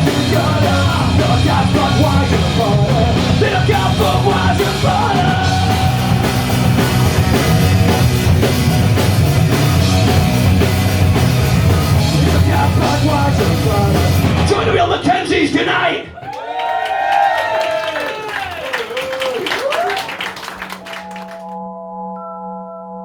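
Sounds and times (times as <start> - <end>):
punk rock band playing live: 0.0 - 15.0.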